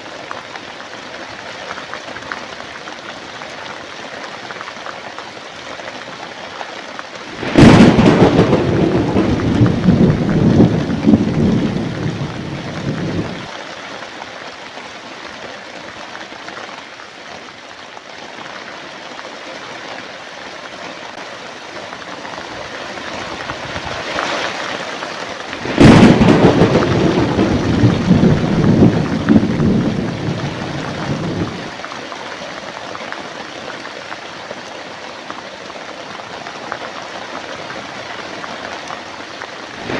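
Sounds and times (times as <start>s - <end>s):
steady rain: 0.0s - 39.9s
thunder cracking and rumbling: 7.3s - 13.5s, 25.5s - 31.8s.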